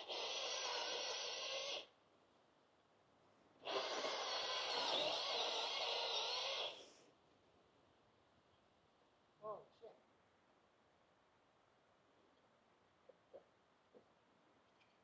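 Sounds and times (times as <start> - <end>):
chainsaw cutting a tree: 0.0 - 1.9, 3.6 - 6.8.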